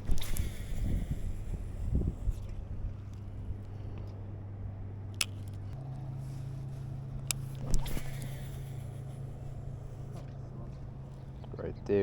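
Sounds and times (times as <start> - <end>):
low engine hum: 0.0 - 12.0
sharp clicks: 5.1 - 5.8.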